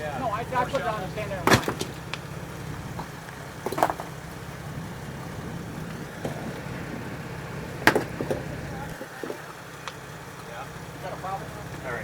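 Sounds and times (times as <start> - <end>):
engine idling: 0.0 - 12.0
sharp knocks: 0.8 - 2.3, 7.8 - 9.4.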